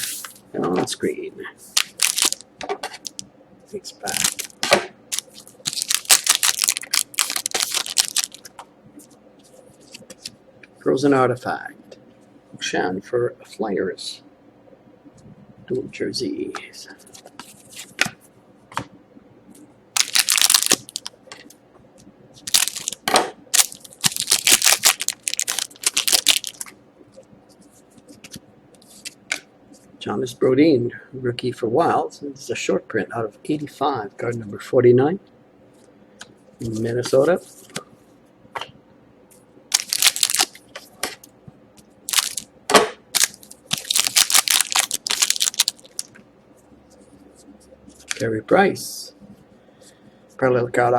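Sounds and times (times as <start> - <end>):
plastic and foil wrapping crinkling: 1.7 - 2.4, 4.0 - 8.5, 20.0 - 21.1, 22.4 - 26.7, 39.7 - 40.6, 42.1 - 42.5, 43.1 - 46.2
rustling paper and plastic: 1.7 - 2.4, 4.0 - 8.5, 20.0 - 21.1, 22.4 - 23.0, 23.6 - 26.7, 39.7 - 40.6, 42.1 - 42.4, 43.1 - 46.2.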